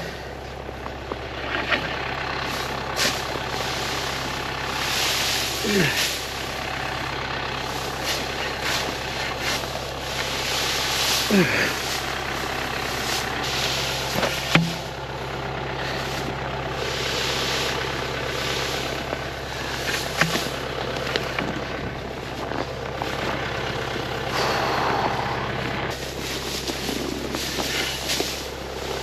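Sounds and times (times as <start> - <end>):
tractor engine idling: 0.0 - 29.0
bedding being forked: 0.8 - 25.2, 25.8 - 29.0.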